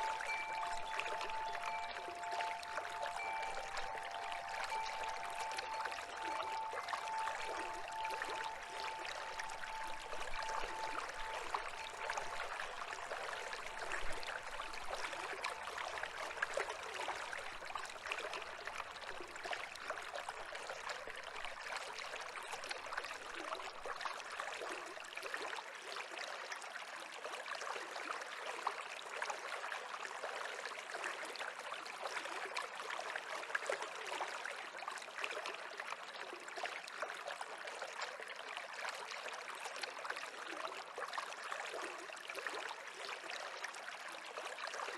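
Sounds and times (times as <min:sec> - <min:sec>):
faint ringing tone: 0:00.0 - 0:19.2
stream of water babbling: 0:00.0 - 0:44.9.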